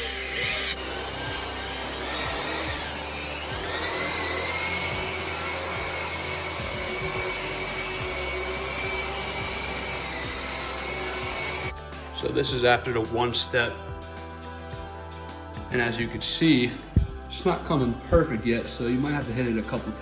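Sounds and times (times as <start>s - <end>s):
power polisher motor whine: 0.0s - 11.7s.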